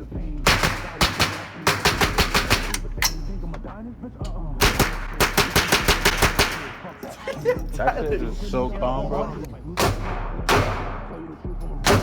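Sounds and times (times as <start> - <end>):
rapid gunfire: 0.4 - 2.9, 4.6 - 7.0, 9.8 - 12.0.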